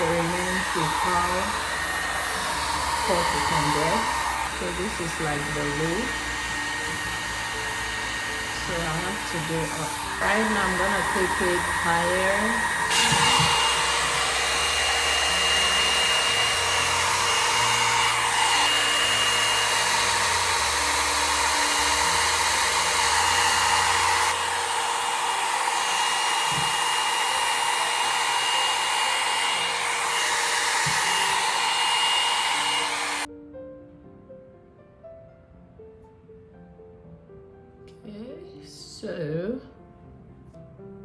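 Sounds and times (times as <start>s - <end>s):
hot air brush blowing: 0.0s - 33.3s.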